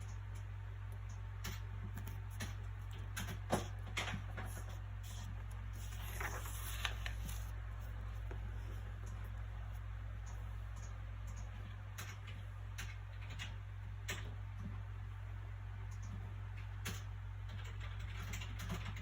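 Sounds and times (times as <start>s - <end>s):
steady low hum: 0.0s - 18.5s
book pages rustling: 4.4s - 8.8s.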